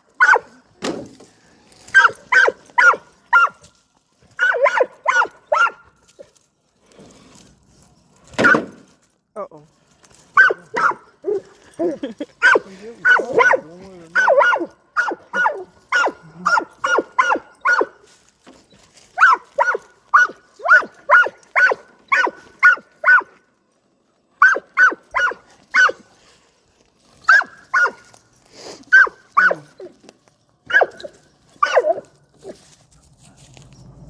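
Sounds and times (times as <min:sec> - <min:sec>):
dog barking: 0:00.2 - 0:00.6, 0:01.9 - 0:03.6, 0:04.4 - 0:06.3, 0:10.4 - 0:11.5, 0:12.4 - 0:18.0, 0:19.2 - 0:23.4, 0:24.4 - 0:26.0, 0:27.3 - 0:28.1, 0:28.9 - 0:29.9, 0:30.7 - 0:32.6.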